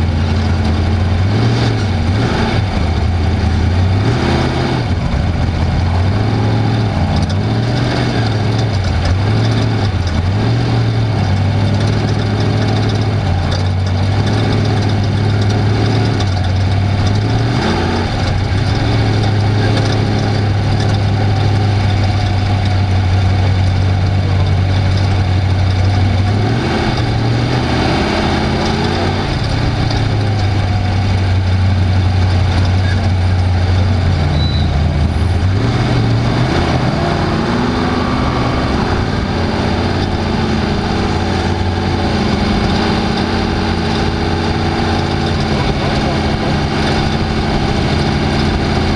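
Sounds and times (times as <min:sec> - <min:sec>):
constant noisy rush: 0:00.0 - 0:48.9
race vehicle engine revving: 0:00.0 - 0:48.9.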